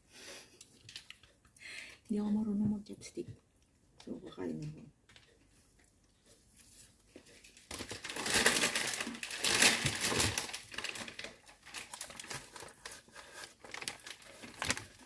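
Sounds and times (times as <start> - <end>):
small clicks and crackles: 0.5 - 1.6, 7.0 - 15.0
close crinkling and crunching: 0.6 - 1.4, 4.6 - 15.0.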